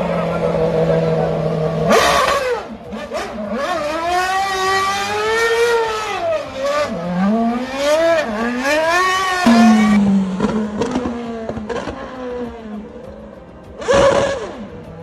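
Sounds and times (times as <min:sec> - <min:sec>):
racing car engine revving: 0:00.0 - 0:13.0.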